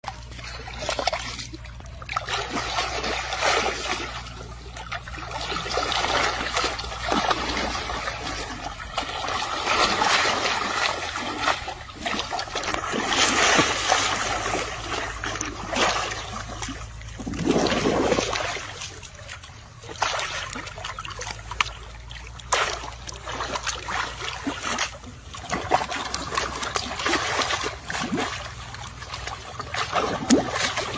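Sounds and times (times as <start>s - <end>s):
water splashing and trickling: 0.0s - 30.9s.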